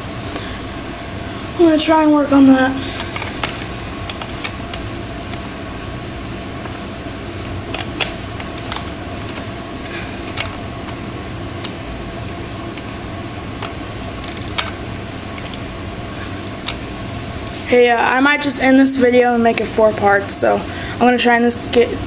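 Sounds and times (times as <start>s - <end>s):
air conditioner humming: 0.0s - 22.0s
wrench metallic clicks: 14.2s - 14.8s.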